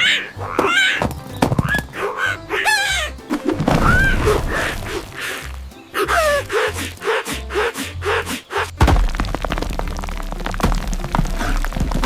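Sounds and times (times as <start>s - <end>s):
high squeaky character cries: 0.0s - 1.0s, 1.7s - 3.2s
cartoon music with bass beat: 0.0s - 12.0s.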